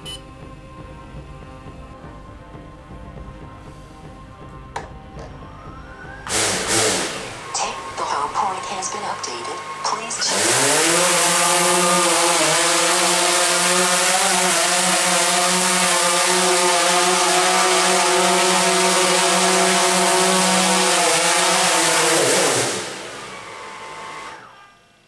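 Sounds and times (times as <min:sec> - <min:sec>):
drone propellers whirring: 0:00.0 - 0:25.0.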